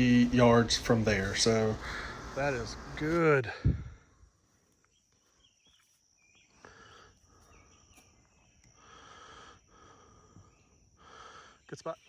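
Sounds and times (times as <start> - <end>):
high insect drone: 4.0 - 12.0
bird chirps: 4.6 - 9.6.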